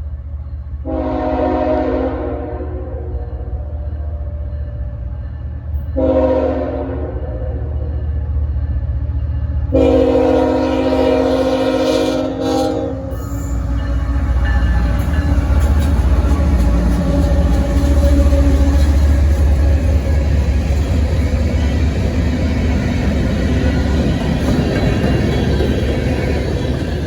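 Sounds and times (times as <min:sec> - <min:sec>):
train rumbling past: 0:00.0 - 0:27.0
locomotive air horn: 0:00.8 - 0:03.0, 0:06.0 - 0:07.1, 0:09.7 - 0:13.2.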